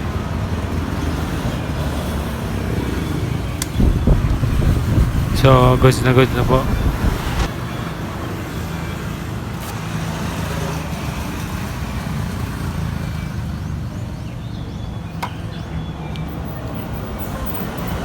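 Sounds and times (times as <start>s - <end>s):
low engine rumble: 3.6s - 7.5s.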